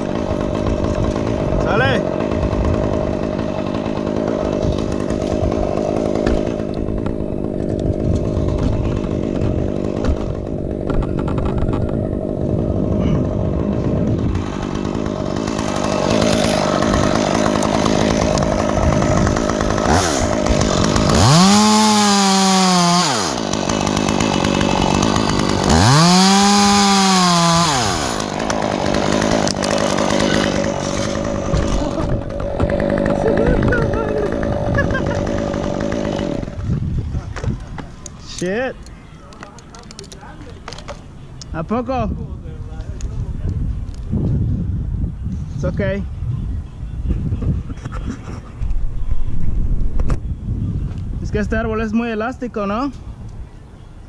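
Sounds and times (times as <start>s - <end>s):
chainsaw running: 0.0s - 38.6s.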